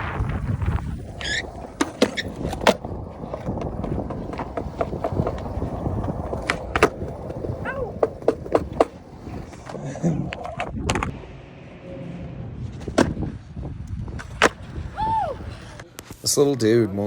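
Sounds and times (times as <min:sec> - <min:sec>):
skateboard wheels rolling on concrete: 0:00.0 - 0:16.5
skateboard clacking on ground: 0:01.0 - 0:11.1.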